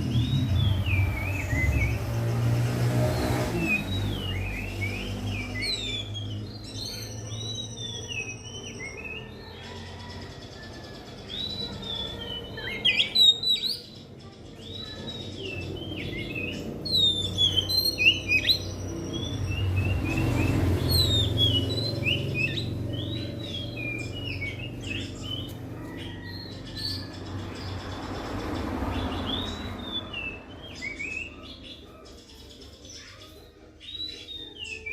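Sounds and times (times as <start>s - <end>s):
bird singing whistled phrases: 16.0s - 25.1s.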